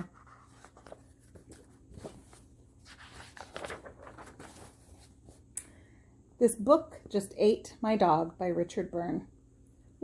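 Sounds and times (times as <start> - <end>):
book pages rustling and scraping: 0.0 - 5.5.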